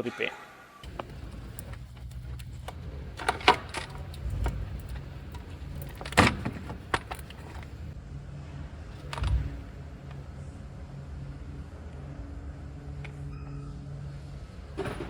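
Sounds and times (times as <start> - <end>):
steady low hum: 0.8 - 15.0.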